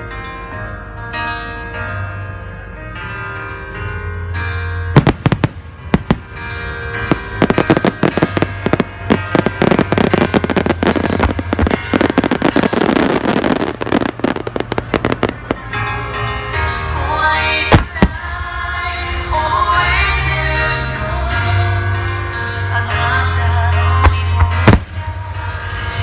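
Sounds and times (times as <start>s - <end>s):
music: 0.0s - 26.0s
fireworks bangs and crackling: 5.0s - 16.0s, 17.7s - 18.4s, 24.0s - 25.2s.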